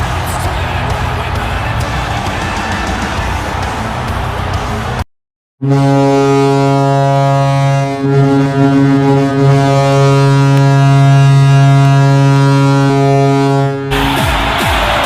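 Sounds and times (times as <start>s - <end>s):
deep goal horn blast: 0.0s - 5.0s, 5.6s - 15.0s.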